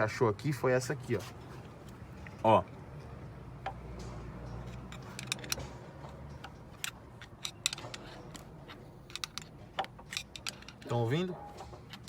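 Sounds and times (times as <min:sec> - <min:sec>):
camshaft metallic clicks and taps: 0:03.0 - 0:11.0.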